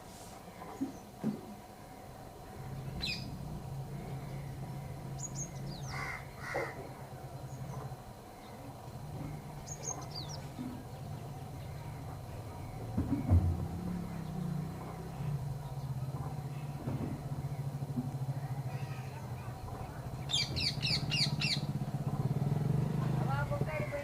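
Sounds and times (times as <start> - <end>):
small birds chirping: 2.0 - 24.0
crow cawing: 5.8 - 6.8.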